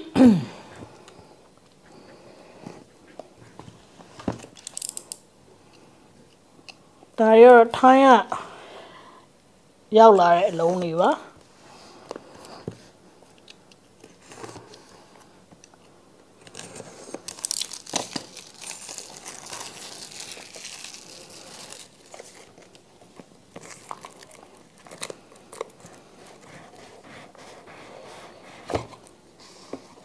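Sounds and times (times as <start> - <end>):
packaging crinkling and tearing: 16.4 - 26.5.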